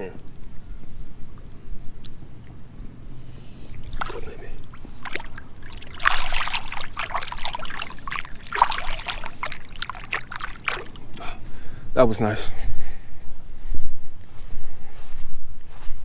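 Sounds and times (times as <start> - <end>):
water splashing and trickling: 0.0 - 11.6.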